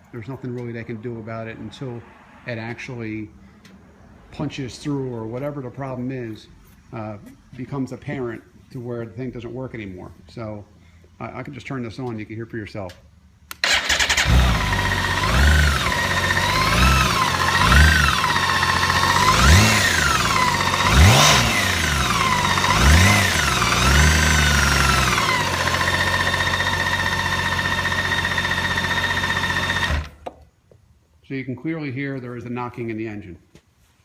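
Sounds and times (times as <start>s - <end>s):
motorcycle engine revving and idling: 13.6s - 30.2s.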